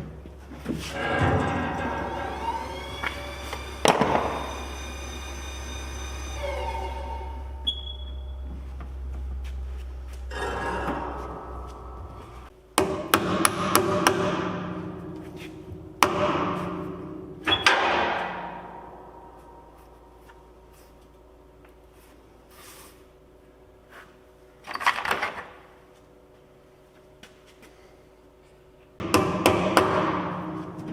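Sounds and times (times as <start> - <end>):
low steady hum: 0.0 - 17.6, 18.2 - 22.5
hammer striking metal: 10.3 - 15.3, 16.0 - 19.4, 29.0 - 30.9.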